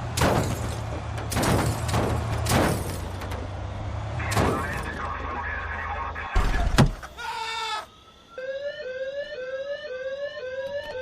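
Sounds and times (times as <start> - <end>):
electronic alarm chirping: 7.7 - 11.0.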